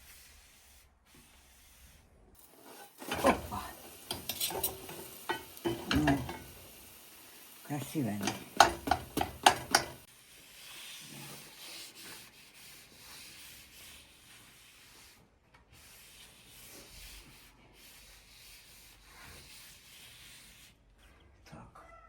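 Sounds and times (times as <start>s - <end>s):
rubbing on a surface: 0.0s - 5.7s, 8.3s - 21.2s.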